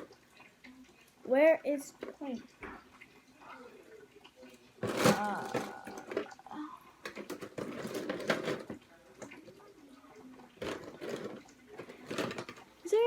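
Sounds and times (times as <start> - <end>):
craft supplies rustling: 4.8 - 6.5, 7.1 - 9.4, 10.6 - 13.0.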